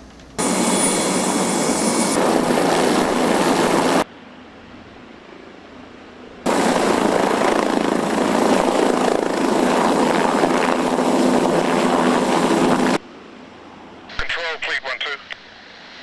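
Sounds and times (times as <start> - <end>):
helicopter turbine and rotor: 0.4 - 4.1, 6.1 - 14.3.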